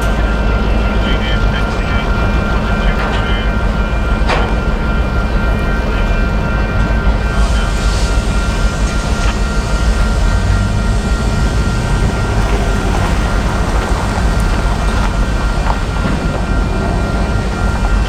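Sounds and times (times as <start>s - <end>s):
freight train rumbling past: 0.0s - 18.0s
rain: 7.4s - 18.0s.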